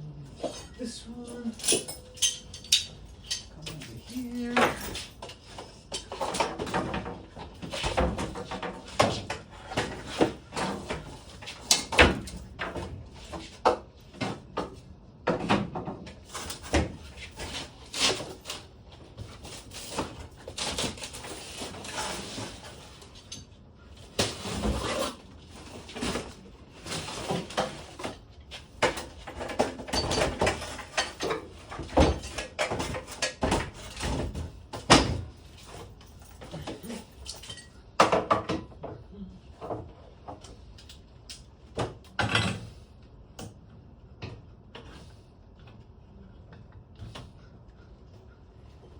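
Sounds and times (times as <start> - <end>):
metal tools clanking: 0.4 - 7.0, 28.8 - 38.0.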